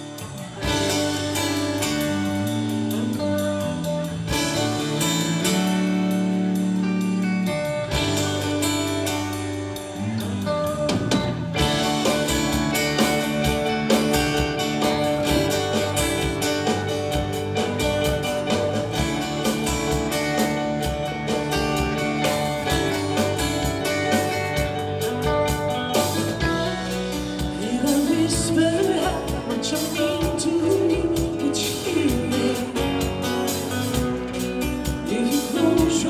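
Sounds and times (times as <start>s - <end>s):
live country band playing: 0.0s - 36.0s
woman singing lead vocal: 26.4s - 33.4s, 34.8s - 36.0s.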